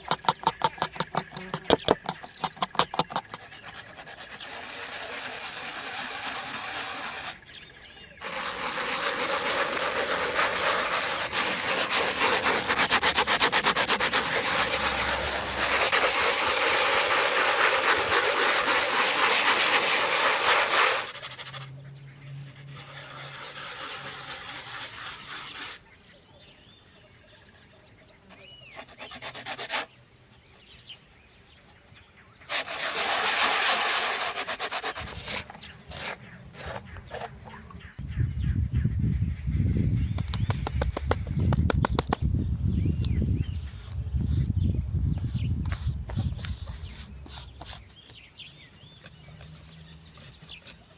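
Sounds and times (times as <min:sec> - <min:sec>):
abrasive rubbing: 0:00.0 - 0:07.4, 0:08.2 - 0:21.7, 0:32.5 - 0:37.4.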